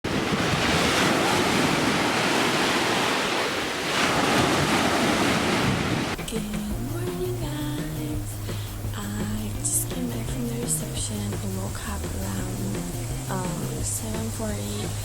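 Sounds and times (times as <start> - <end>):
sea waves washing in: 0.0 - 15.0
wind buffeting microphone: 0.1 - 6.2
music with steady notes: 6.2 - 15.0.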